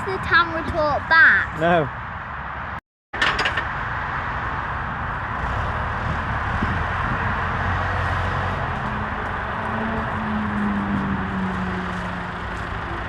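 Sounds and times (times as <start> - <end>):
tractor engine running: 5.0 - 13.0.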